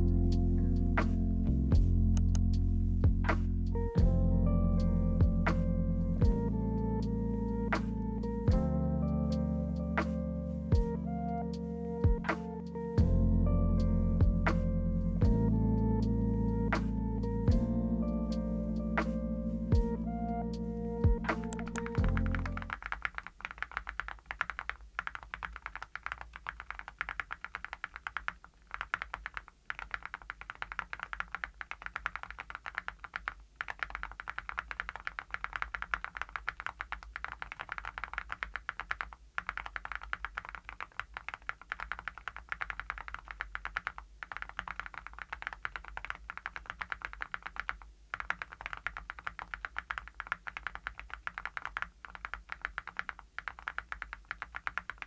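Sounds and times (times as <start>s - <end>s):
mechanical keyboard typing: 21.1s - 55.0s.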